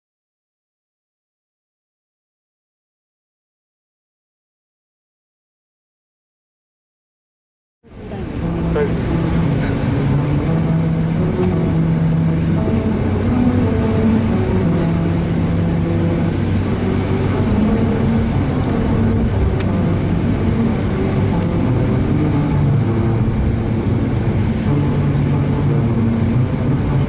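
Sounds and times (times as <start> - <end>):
steady road noise: 7.8 - 27.0
tyres humming melody on grooves: 7.9 - 27.0.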